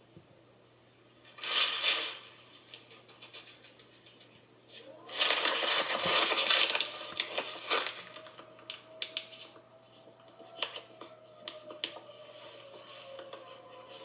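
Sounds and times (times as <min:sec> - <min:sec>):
warning siren steady tone: 0:07.0 - 0:14.0.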